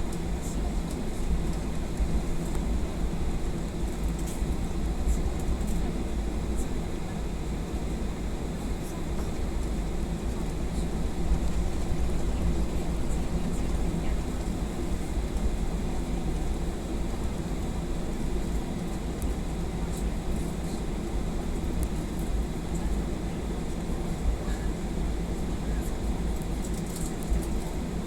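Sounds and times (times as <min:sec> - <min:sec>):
low rumble of taxiing airliner: 0:00.0 - 0:28.0.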